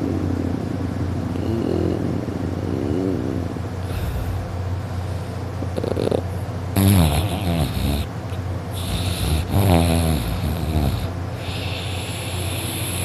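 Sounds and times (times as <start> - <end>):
man snoring loudly: 1.4 - 4.4, 5.8 - 8.1, 8.7 - 13.0.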